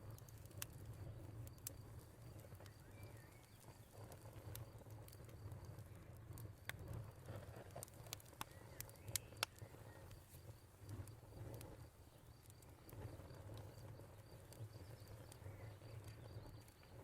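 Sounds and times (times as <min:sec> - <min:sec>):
wood fire crackling and popping: 0:00.0 - 0:17.0
crickets chirping: 0:00.1 - 0:17.0.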